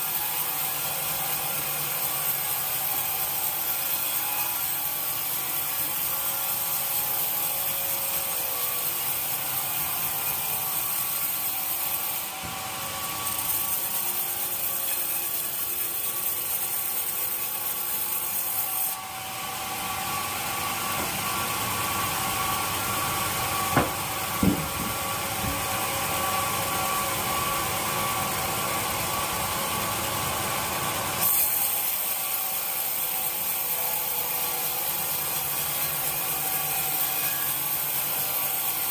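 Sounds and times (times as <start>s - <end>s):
saw cutting through wood: 0.0s - 38.9s
sharp knocks: 23.7s - 25.7s.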